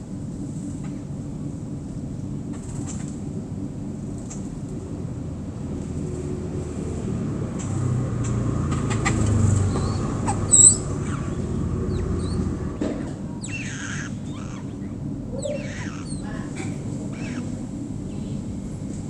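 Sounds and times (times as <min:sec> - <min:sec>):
small birds chirping: 0:09.4 - 0:18.6
low rumble: 0:09.5 - 0:19.0.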